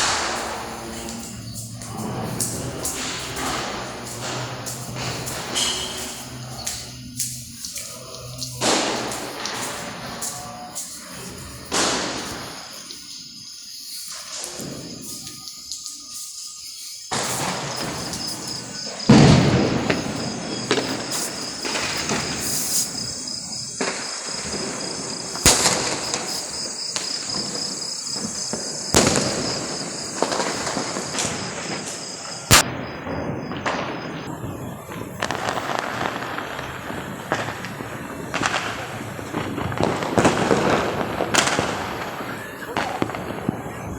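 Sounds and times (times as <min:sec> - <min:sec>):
continuous crackling: 0:00.0 - 0:43.9
firecrackers banging: 0:00.0 - 0:43.9.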